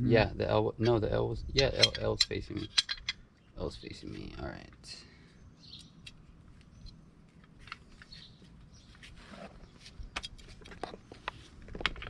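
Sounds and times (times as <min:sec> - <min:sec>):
small metal parts clicking: 0:01.6 - 0:03.2.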